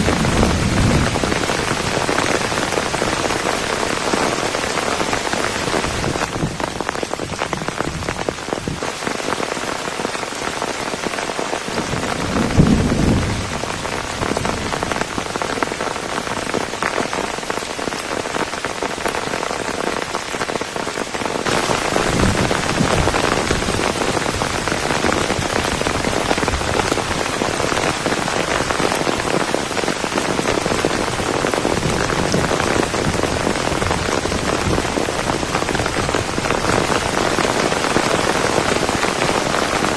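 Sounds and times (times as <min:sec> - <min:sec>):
heavy rain: 0:00.0 - 0:39.9
low rumble: 0:12.2 - 0:14.3.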